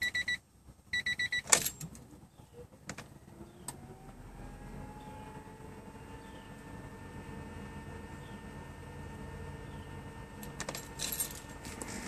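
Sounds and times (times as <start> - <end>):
car warning chime beeping: 0.0 - 1.6
faint hum with rising tone: 3.1 - 12.0.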